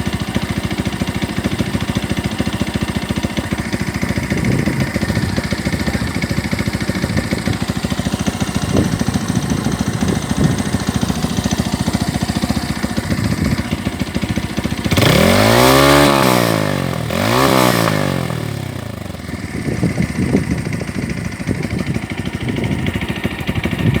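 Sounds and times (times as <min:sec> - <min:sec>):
motorcycle engine idling: 0:00.0 - 0:24.0
motorcycle engine revving: 0:00.0 - 0:24.0.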